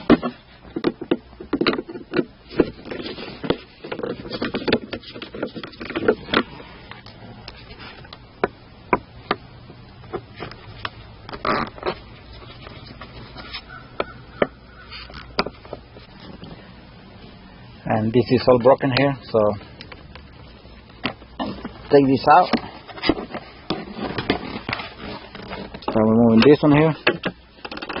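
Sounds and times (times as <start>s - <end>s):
plastic trim scraping: 0.0s - 9.4s, 10.0s - 16.7s, 20.7s - 28.0s
clicks and knocks on plastic trim: 25.4s - 28.0s.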